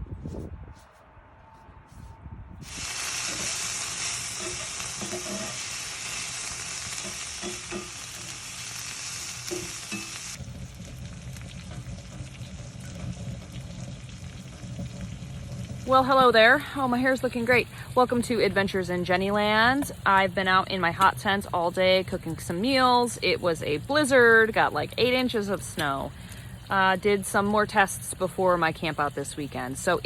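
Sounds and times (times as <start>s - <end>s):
stirring scrapes: 1.9s - 5.8s
food frying and sizzling: 2.6s - 30.0s.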